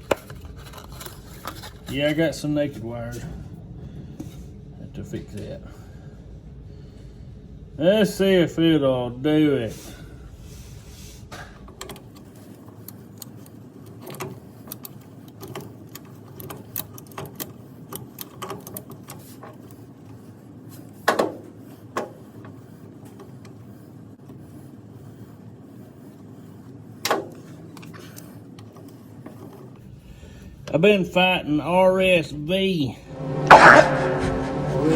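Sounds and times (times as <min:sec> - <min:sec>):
tools and parts clicking: 0:00.0 - 0:01.9, 0:11.6 - 0:19.8
short sounds falling in pitch: 0:33.0 - 0:34.9.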